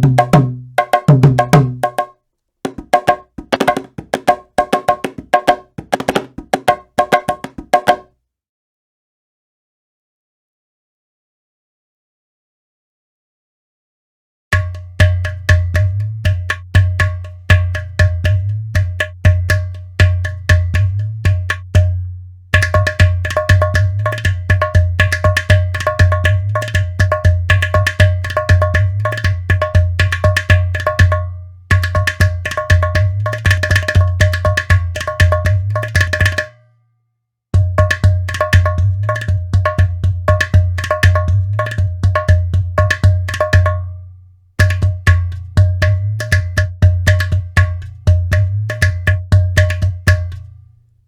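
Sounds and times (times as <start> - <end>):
hand drum rhythm: 0.0 - 8.1, 14.6 - 36.6, 37.6 - 44.0, 44.6 - 50.6.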